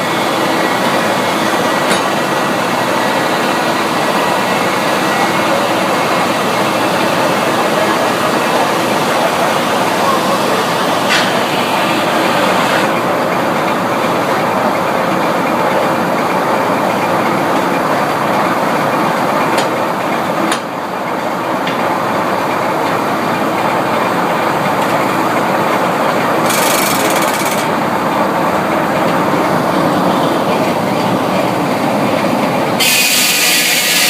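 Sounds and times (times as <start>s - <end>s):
sawmill machinery running: 0.0s - 34.0s
sharp clacks: 26.4s - 27.8s.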